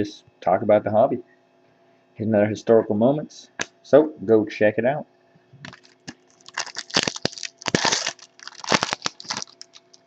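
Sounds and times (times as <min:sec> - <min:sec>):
foil wrapper tearing and crinkling: 0:05.7 - 0:10.0.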